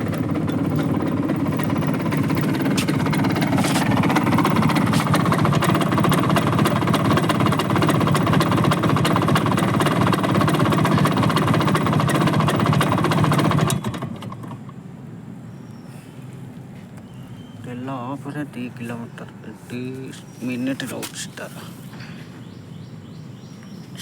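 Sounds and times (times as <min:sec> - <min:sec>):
scooter engine running: 0:00.0 - 0:14.8.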